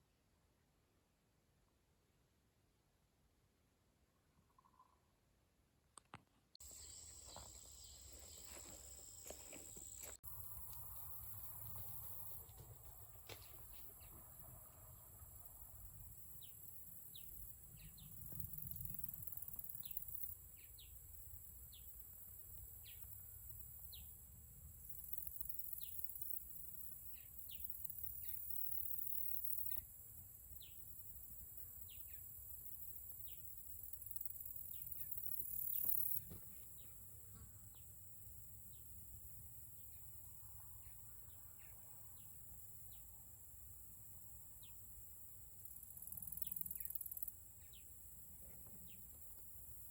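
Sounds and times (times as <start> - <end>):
bird chirping: 4.4 - 5.2
high-pitched insect chorus: 6.6 - 49.9.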